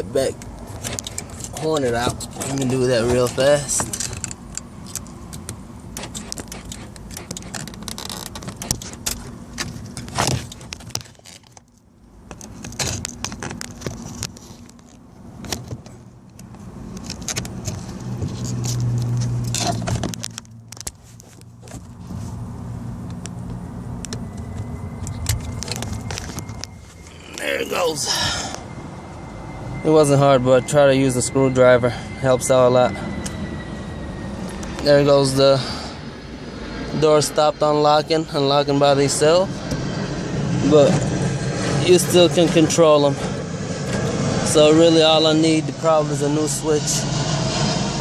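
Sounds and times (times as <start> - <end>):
clicks scrapes and rattles: 0.4 - 21.9
low hum: 16.0 - 48.0.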